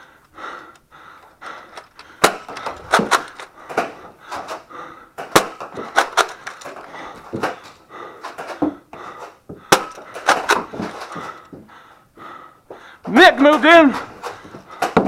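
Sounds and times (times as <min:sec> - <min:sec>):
foam balls hitting hard surfaces: 0:02.1 - 0:11.4, 0:13.0 - 0:15.0.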